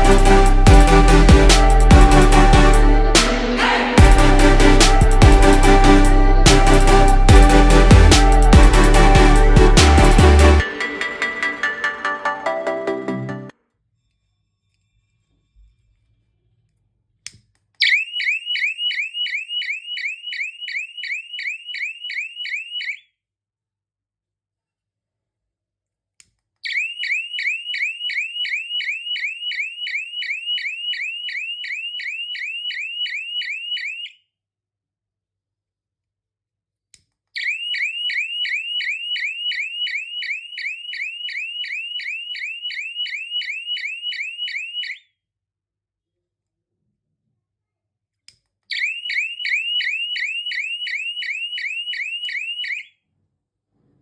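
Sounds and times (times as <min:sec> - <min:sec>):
alarm siren of rising chirps: 0:00.0 - 0:12.4, 0:17.8 - 0:23.0, 0:26.7 - 0:34.2, 0:37.4 - 0:45.1, 0:48.7 - 0:52.9.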